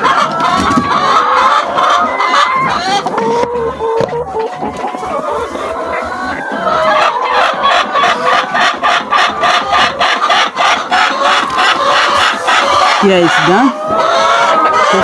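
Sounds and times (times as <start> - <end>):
hens clucking: 0.0 - 15.0.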